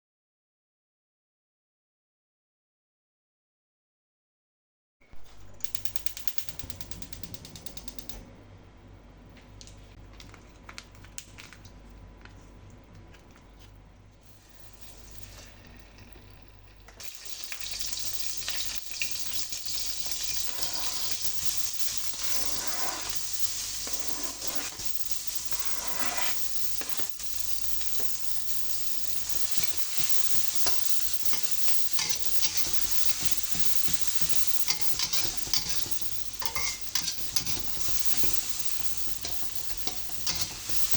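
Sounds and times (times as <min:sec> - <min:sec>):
food sizzling in hot oil: 0:14.2 - 0:40.9
stirring in a pan: 0:14.2 - 0:40.9.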